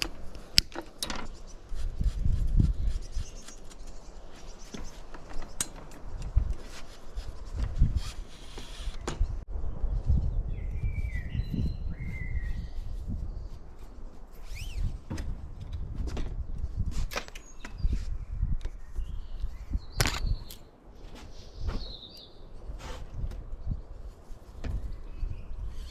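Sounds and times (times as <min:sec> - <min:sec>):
small birds chirping: 0:00.0 - 0:09.4, 0:10.1 - 0:15.0, 0:17.1 - 0:25.9.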